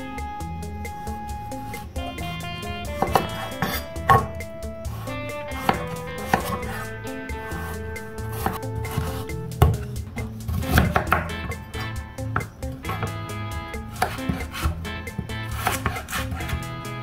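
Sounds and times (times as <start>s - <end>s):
background music: 0.0s - 17.0s
knife chopping on cutting board: 3.0s - 4.3s, 5.6s - 6.8s, 13.9s - 14.8s, 15.6s - 16.6s.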